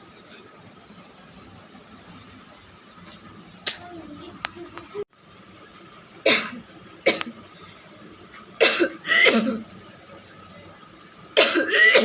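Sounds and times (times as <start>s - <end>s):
woman coughing: 8.6s - 9.6s, 11.4s - 12.0s.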